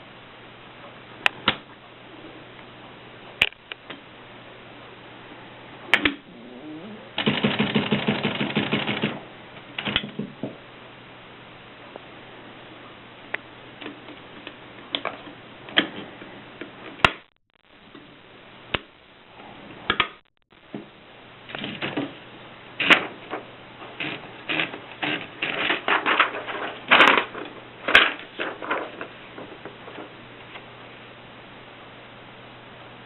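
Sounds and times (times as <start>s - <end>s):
typewriter keystrokes: 7.2s - 9.2s, 9.8s - 10.1s.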